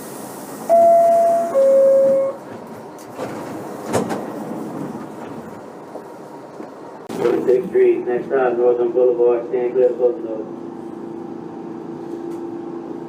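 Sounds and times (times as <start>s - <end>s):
subway car rumble: 0.0s - 13.0s
two-tone door chime: 0.7s - 2.4s.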